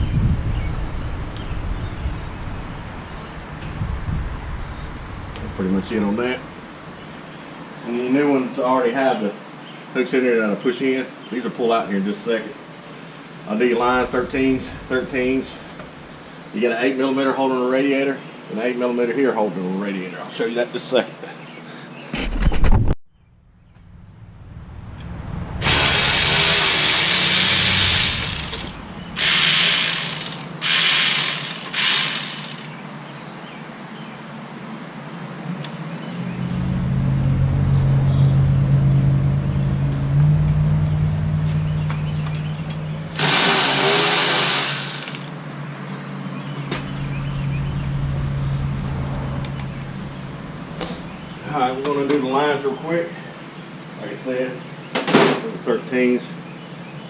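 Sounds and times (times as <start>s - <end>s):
steady low hum: 13.0s - 16.6s, 23.4s - 32.8s, 46.4s - 53.9s
power tool bursts: 25.6s - 32.8s, 43.2s - 45.4s.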